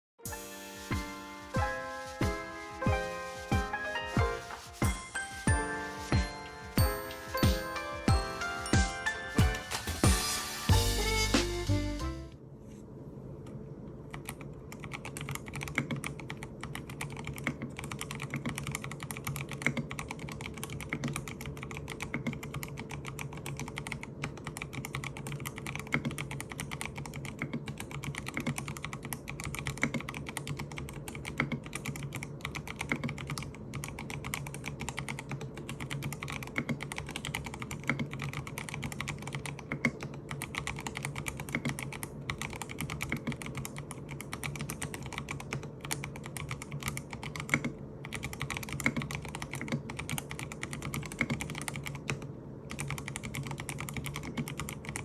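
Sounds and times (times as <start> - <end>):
fast typing on mechanical keyboard: 14.1 - 55.0.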